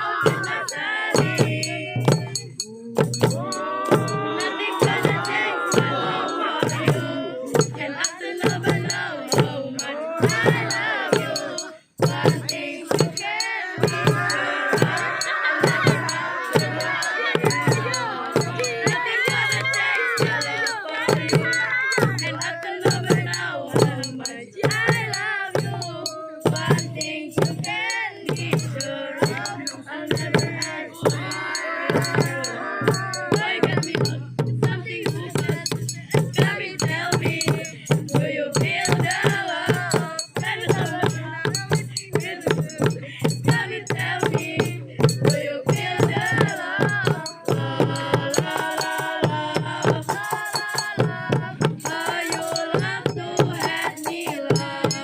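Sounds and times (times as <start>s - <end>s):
drums and shakers playing: 0.0s - 55.0s
voices singing or chanting: 0.0s - 55.0s.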